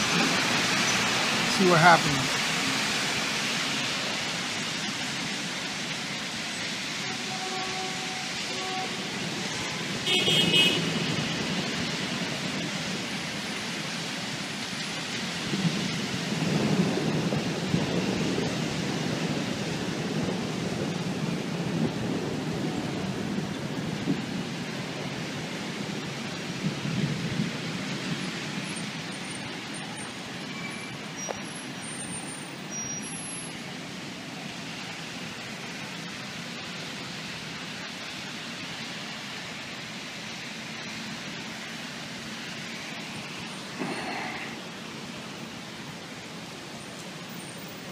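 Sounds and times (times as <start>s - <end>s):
city traffic: 0.0s - 47.9s
heavy rain falling: 0.0s - 47.9s
car horn toot: 7.0s - 9.0s, 9.6s - 11.0s
low thunder rumbles: 15.1s - 30.3s.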